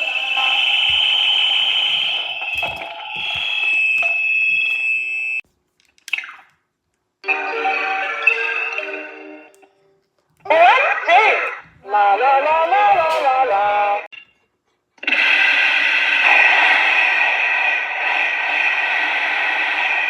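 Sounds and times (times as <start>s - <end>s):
high electronic alarm tones: 0.0s - 5.4s.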